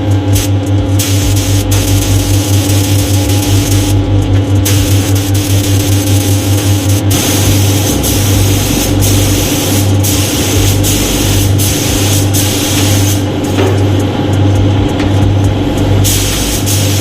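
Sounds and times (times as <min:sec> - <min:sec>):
steady low hum: 0:00.0 - 0:17.0
spray gun hissing: 0:00.4 - 0:04.0, 0:04.6 - 0:13.3, 0:16.0 - 0:17.0.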